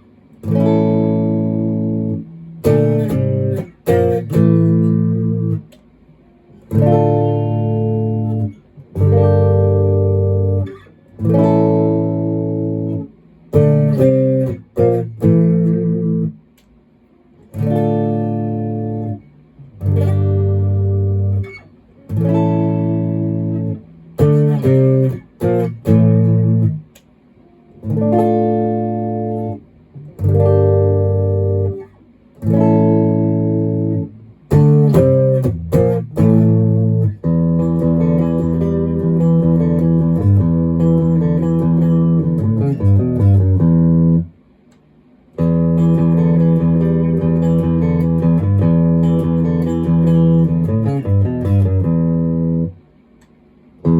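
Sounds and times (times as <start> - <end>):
distorted electric guitar chords: 0.4 - 5.7, 6.6 - 16.4, 17.5 - 26.9, 27.7 - 44.3.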